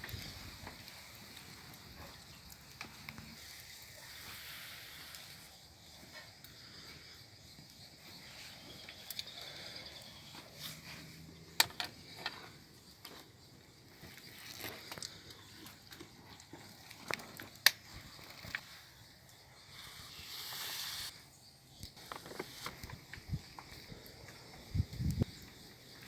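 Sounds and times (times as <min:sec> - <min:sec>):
faint outdoor background: 0:00.0 - 0:26.0
sharp knocks and snaps: 0:16.9 - 0:18.6.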